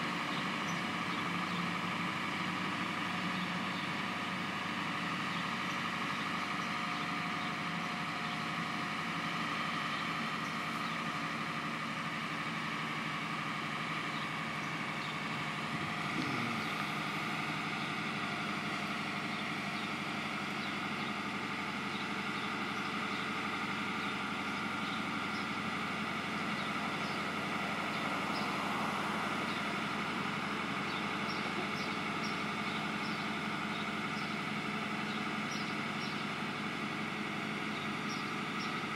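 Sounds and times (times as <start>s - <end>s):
engine running steadily: 0.0s - 38.9s.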